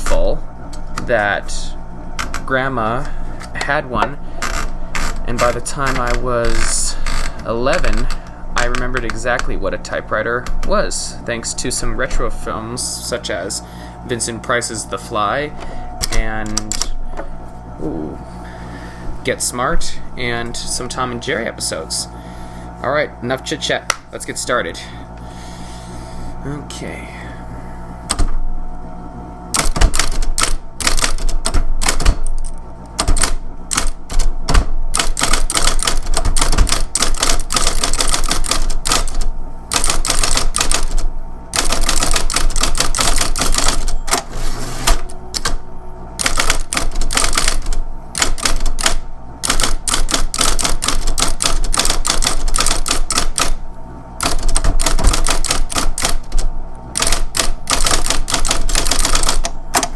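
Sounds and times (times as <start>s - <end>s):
typewriter running hum: 0.0s - 23.8s, 27.4s - 28.6s, 29.4s - 59.9s
typewriter keys clacking: 29.6s - 34.3s, 35.0s - 41.0s, 41.6s - 44.0s, 46.2s - 53.5s, 54.2s - 56.4s, 57.0s - 59.9s.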